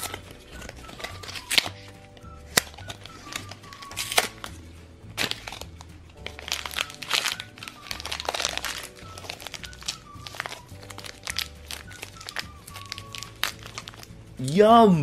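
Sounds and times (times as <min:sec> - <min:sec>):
plastic packaging crinkling: 0:00.0 - 0:04.6, 0:05.2 - 0:14.2
light background music: 0:00.0 - 0:15.0.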